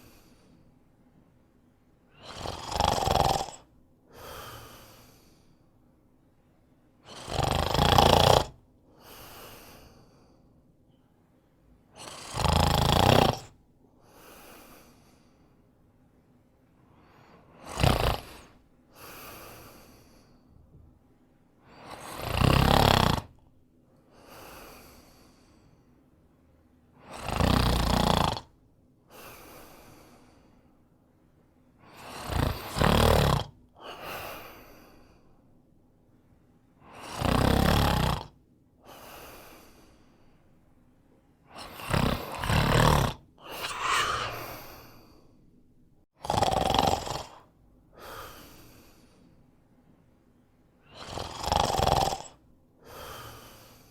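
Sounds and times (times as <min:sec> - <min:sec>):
quiet breath: 0:00.0 - 0:02.4, 0:03.6 - 0:07.3, 0:08.8 - 0:12.3, 0:13.5 - 0:22.2, 0:23.8 - 0:27.1, 0:28.5 - 0:32.8, 0:33.7 - 0:37.2, 0:38.8 - 0:46.1, 0:47.2 - 0:51.1, 0:52.2 - 0:53.9
man snoring: 0:02.2 - 0:05.4, 0:07.1 - 0:09.6, 0:12.0 - 0:13.6, 0:17.5 - 0:20.1, 0:21.8 - 0:23.4, 0:27.0 - 0:28.5, 0:31.9 - 0:33.6, 0:36.8 - 0:38.4, 0:41.5 - 0:45.1, 0:46.2 - 0:49.1, 0:50.9 - 0:53.9.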